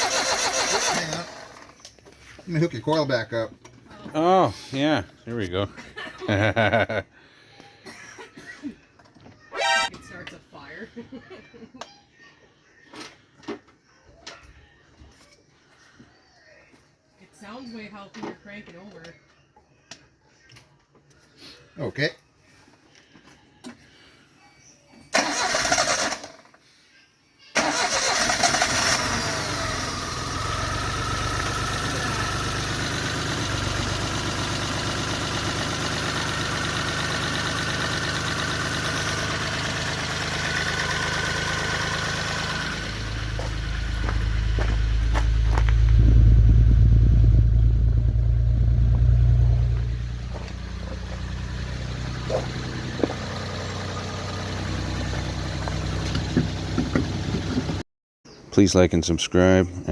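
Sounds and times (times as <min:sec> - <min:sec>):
car engine idling: 0:27.6 - 0:57.8.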